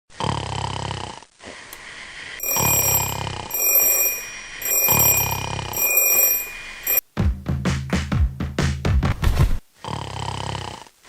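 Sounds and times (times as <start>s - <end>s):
person snoring: 0.2s - 1.2s
high electronic ringing tone: 2.4s - 7.0s.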